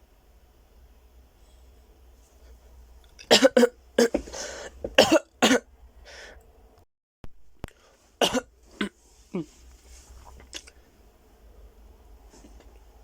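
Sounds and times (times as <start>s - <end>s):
person coughing: 3.2s - 5.7s, 8.2s - 9.6s
noisy breath drawn in: 4.2s - 4.8s, 6.0s - 6.4s.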